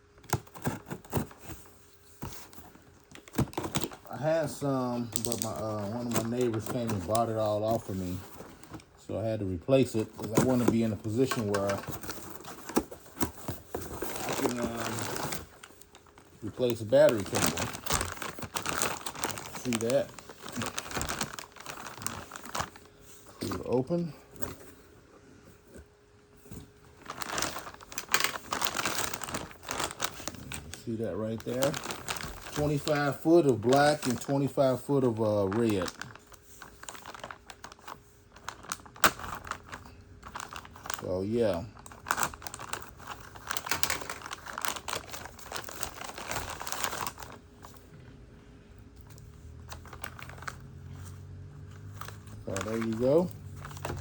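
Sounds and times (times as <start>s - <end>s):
plastic packaging crinkling: 0.0s - 24.8s, 26.6s - 48.0s, 48.9s - 54.0s.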